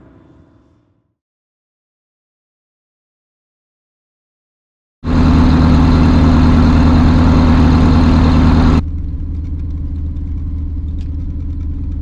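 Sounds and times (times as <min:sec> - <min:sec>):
aircraft piston engine idling: 0:05.1 - 0:12.0.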